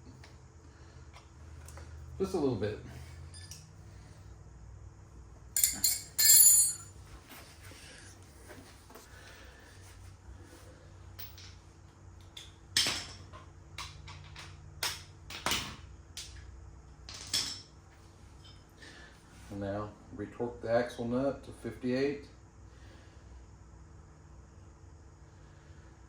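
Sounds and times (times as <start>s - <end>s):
metal hand tools clanking: 5.6s - 6.9s.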